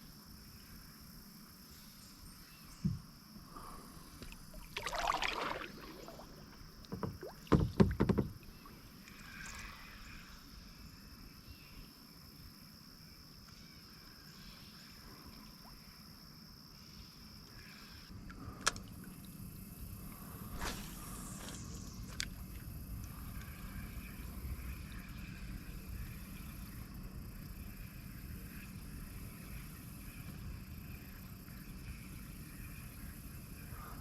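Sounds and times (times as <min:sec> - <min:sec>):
water splash: 0:04.5 - 0:07.7.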